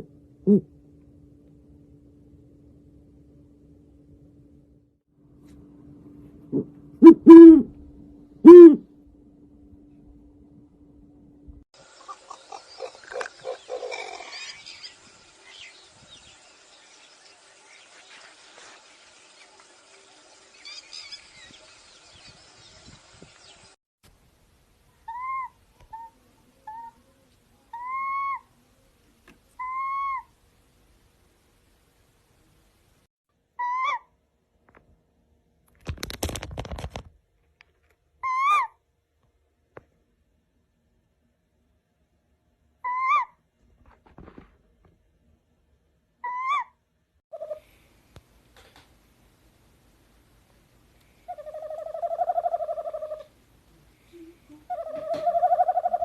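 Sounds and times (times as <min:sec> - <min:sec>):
low owl call: 0:00.0 - 0:00.7, 0:06.5 - 0:07.8, 0:08.4 - 0:08.9, 0:25.0 - 0:27.0, 0:27.7 - 0:28.5, 0:29.6 - 0:30.3, 0:33.6 - 0:34.1, 0:42.8 - 0:43.4, 0:46.2 - 0:47.8, 0:51.2 - 0:53.4, 0:54.0 - 0:56.0
owl calling: 0:08.4 - 0:08.8, 0:25.1 - 0:26.1, 0:27.7 - 0:28.5, 0:29.6 - 0:30.3, 0:33.6 - 0:34.1, 0:38.2 - 0:38.7, 0:42.8 - 0:43.4, 0:46.2 - 0:47.7, 0:51.3 - 0:53.3, 0:54.2 - 0:56.0.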